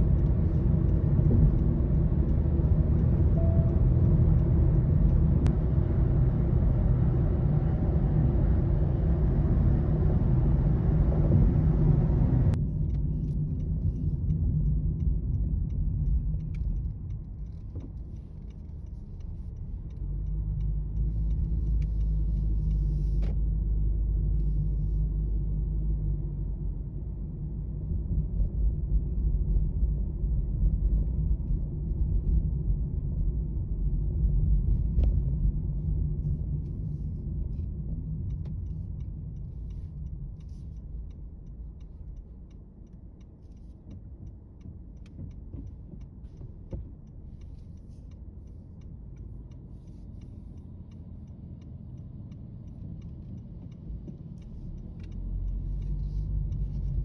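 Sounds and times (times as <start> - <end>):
low outdoor rumble: 0.0 - 57.0
faint light clicks and ticks: 12.5 - 23.4, 34.2 - 57.0.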